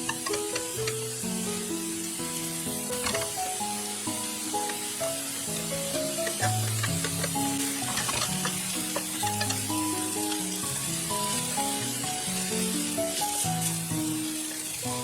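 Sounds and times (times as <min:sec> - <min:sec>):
utensil clicking against pan: 0:00.0 - 0:01.2, 0:05.9 - 0:10.6
background music simple melody: 0:00.0 - 0:15.0
food sizzling in frying pan: 0:00.0 - 0:15.0.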